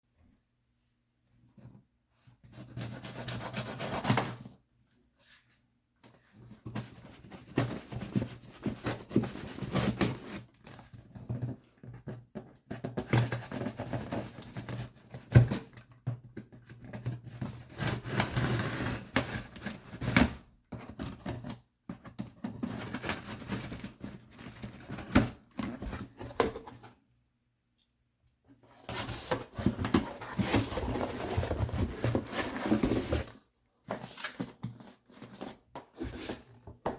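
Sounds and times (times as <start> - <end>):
cardboard rubbing and scraping: 28.8 - 36.6.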